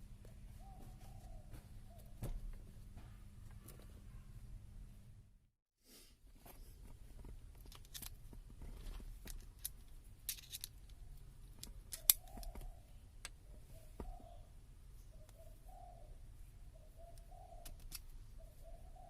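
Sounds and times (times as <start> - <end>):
dove cooing: 0.3 - 2.4, 12.0 - 14.5, 15.1 - 19.0
small sharp clicks and snips: 9.2 - 12.6, 17.1 - 18.2.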